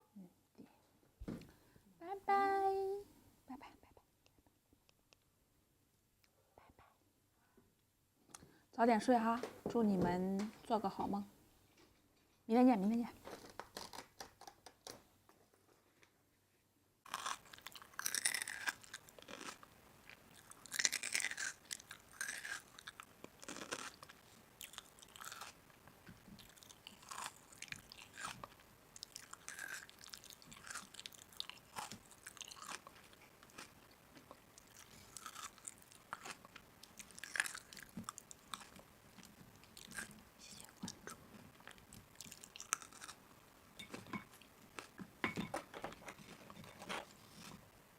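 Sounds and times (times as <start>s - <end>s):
person chewing and crunching food: 17.0s - 45.1s.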